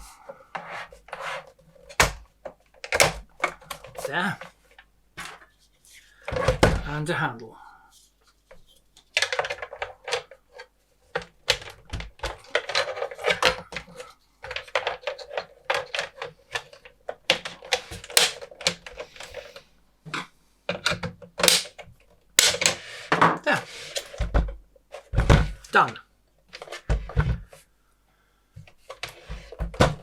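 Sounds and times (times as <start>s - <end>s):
plastic parts clicking and tapping: 1.8s - 5.5s, 8.5s - 19.4s, 20.1s - 27.4s.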